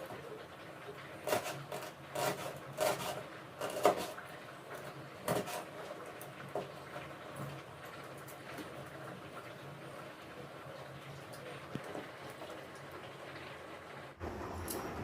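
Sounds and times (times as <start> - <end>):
knife chopping on board: 1.3 - 4.1, 5.3 - 5.6.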